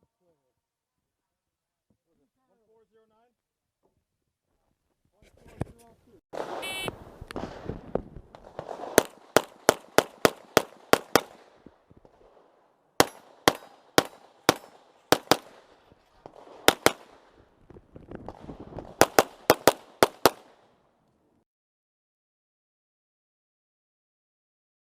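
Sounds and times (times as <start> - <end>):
pistol shots: 6.4 - 7.6, 8.3 - 17.4, 18.3 - 20.8.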